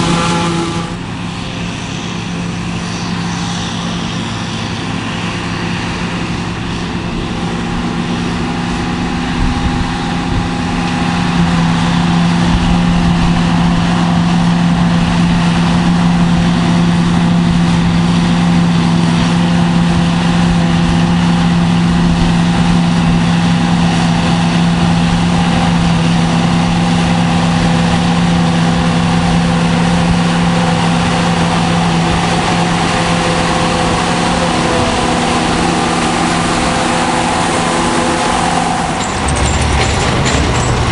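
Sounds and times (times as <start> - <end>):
harvesting machinery engine drone: 0.0 - 40.9.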